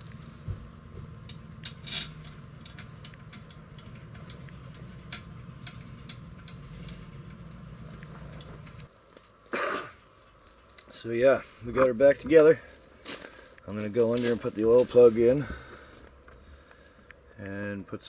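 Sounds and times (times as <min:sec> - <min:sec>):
hand tools clicking and tapping: 0:00.0 - 0:08.9
steady low hum: 0:00.0 - 0:18.0.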